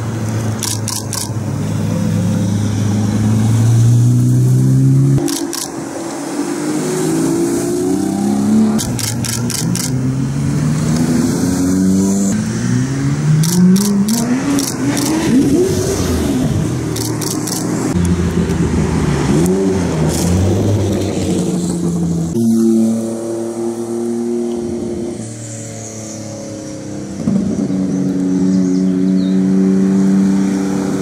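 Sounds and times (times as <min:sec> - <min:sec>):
car engines revving: 0:00.0 - 0:31.0
sharp clicks: 0:00.6 - 0:01.4, 0:05.2 - 0:05.8, 0:08.8 - 0:10.0, 0:13.4 - 0:15.3, 0:16.9 - 0:18.6, 0:19.4 - 0:20.5.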